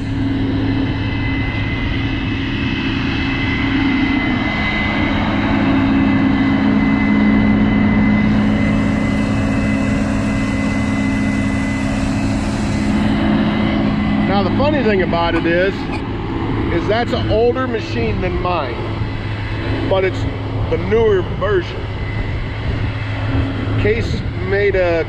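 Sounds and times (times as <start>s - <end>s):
steady engine drone: 0.0s - 25.0s
thin high whine: 0.0s - 25.0s.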